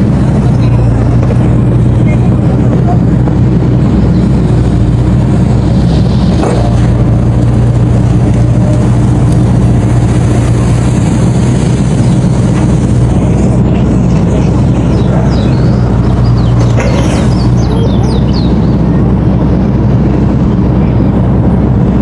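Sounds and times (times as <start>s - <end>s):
diesel engine humming: 0.0s - 22.0s.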